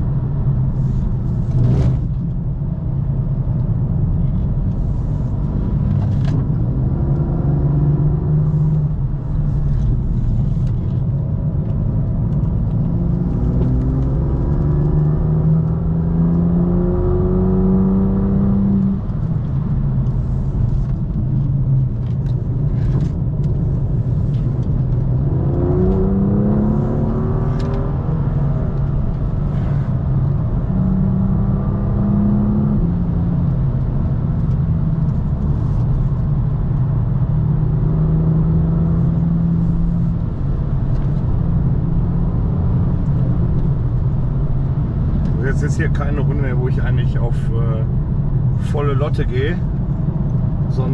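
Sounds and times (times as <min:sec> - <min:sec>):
road and tyre rumble: 0:00.0 - 0:50.9
car engine revving: 0:11.8 - 0:50.9.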